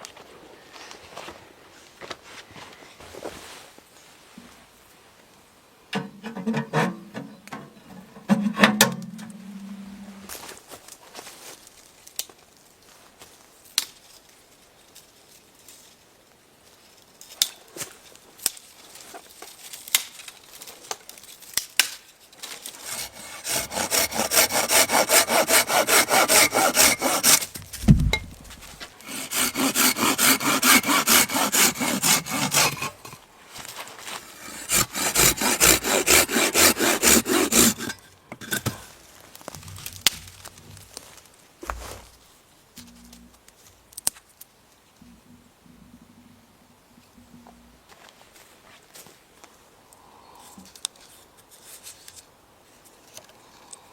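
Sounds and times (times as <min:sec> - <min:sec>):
hand saw cutting wood: 0:22.6 - 0:33.2, 0:34.0 - 0:38.8
dull thud: 0:27.6 - 0:28.8.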